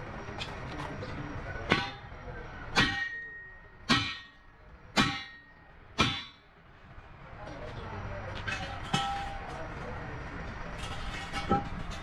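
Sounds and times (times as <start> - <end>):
sharp metallic strikes ringing: 1.7 - 6.5.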